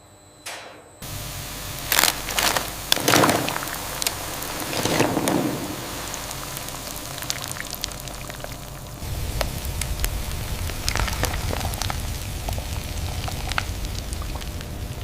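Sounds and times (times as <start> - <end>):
low rumble: 1.0 - 15.0
sharp pops and crackles: 1.0 - 15.0
sugar syrup bubbling and sizzling: 1.0 - 15.0.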